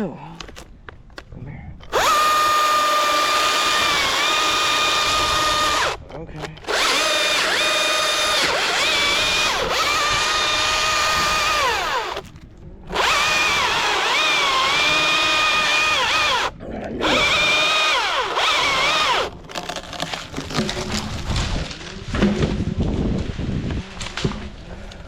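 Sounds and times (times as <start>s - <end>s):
chainsaw cutting wood: 1.8s - 6.0s, 6.6s - 21.8s.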